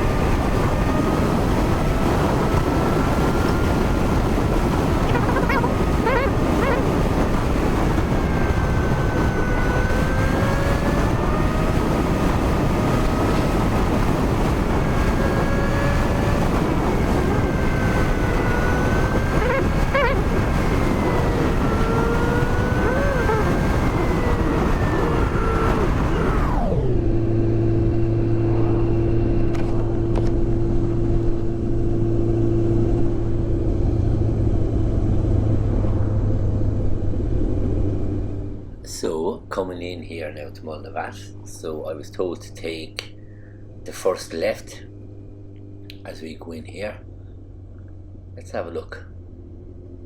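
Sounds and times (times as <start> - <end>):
motorcycle engine running: 0.0 - 37.7
wind rush on microphone: 0.0 - 38.9.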